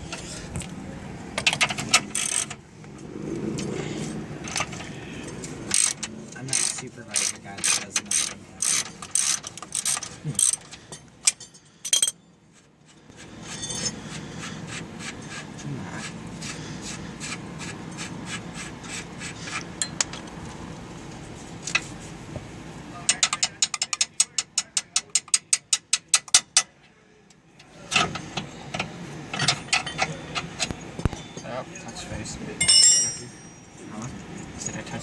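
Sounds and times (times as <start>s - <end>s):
ratchet wrench clicking: 2.0s - 2.6s, 5.7s - 10.7s
metallic tool clicks and knocks: 23.1s - 26.7s.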